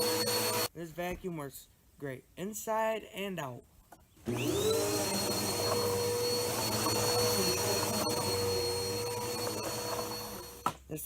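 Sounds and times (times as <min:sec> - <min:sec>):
vacuum cleaner motor whining: 0:00.0 - 0:00.7, 0:04.2 - 0:10.7.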